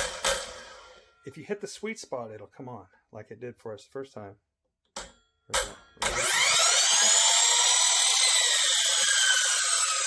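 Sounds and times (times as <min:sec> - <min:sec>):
miter saw motor whine: 0:06.1 - 0:10.0.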